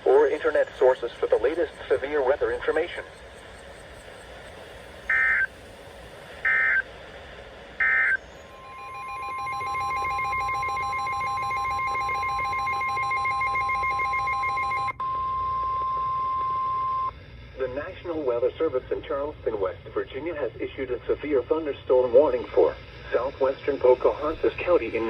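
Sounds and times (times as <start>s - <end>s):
steady warning alarm tone: 0.0s - 5.7s, 6.4s - 7.0s, 7.7s - 17.1s
short data bursts: 5.1s - 5.5s, 6.4s - 6.9s, 7.8s - 15.3s.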